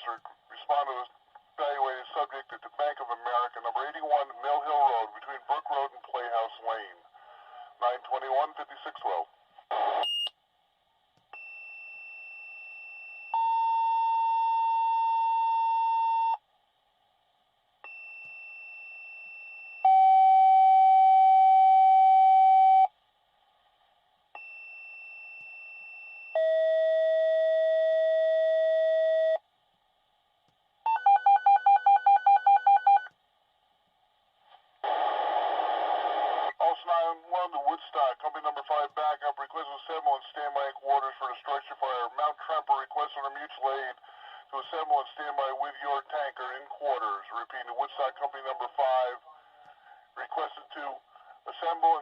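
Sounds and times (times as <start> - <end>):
dispatcher speaking over radio: 0.0 - 7.0, 7.8 - 9.3, 36.5 - 49.4, 50.2 - 52.0.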